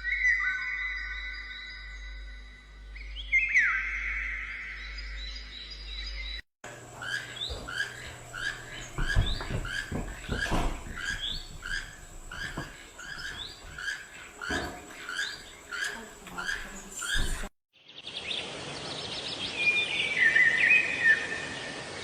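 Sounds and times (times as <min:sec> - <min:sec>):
bird chirping: 0:00.0 - 0:21.3
soft knocks: 0:06.7 - 0:17.5.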